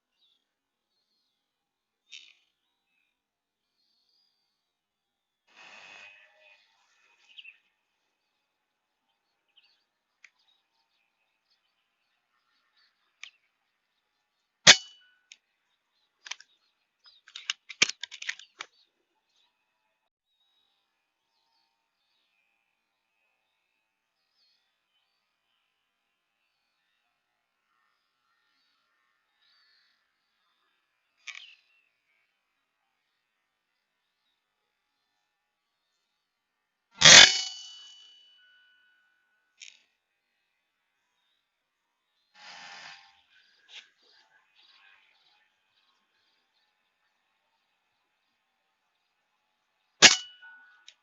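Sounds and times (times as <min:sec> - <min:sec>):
small clicks and rattles: 0:16.2 - 0:16.5, 0:17.1 - 0:18.8
air rifle shot ringing: 0:37.0 - 0:38.0.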